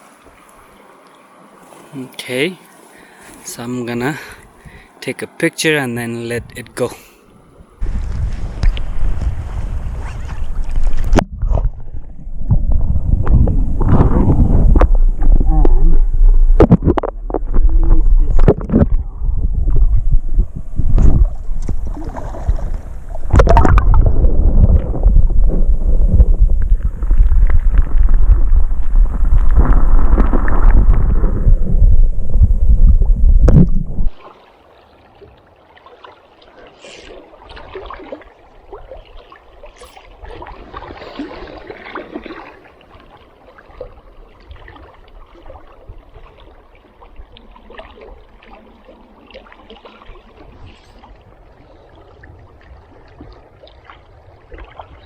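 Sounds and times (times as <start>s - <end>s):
faint gurgling water: 0.0s - 55.0s
river water rushing and splashing: 34.1s - 55.0s.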